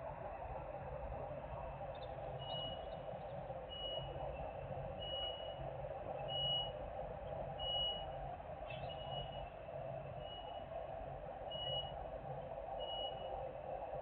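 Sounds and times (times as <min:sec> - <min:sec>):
reversing alarm beeping: 0:02.4 - 0:02.9, 0:03.7 - 0:04.2, 0:05.0 - 0:05.6, 0:06.2 - 0:06.8, 0:07.6 - 0:08.2, 0:08.9 - 0:09.5, 0:10.1 - 0:10.8, 0:11.5 - 0:12.0, 0:12.8 - 0:13.4.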